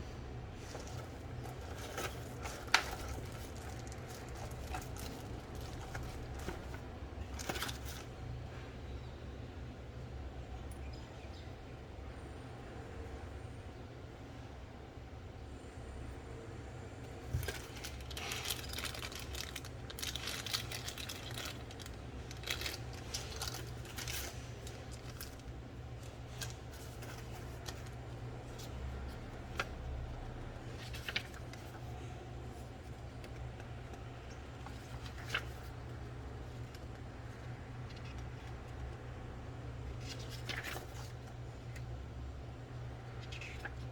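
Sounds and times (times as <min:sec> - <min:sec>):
steady low hum: 0:00.0 - 0:43.9
packaging rustling and crinkling: 0:00.6 - 0:08.2, 0:17.2 - 0:33.6, 0:34.3 - 0:37.1.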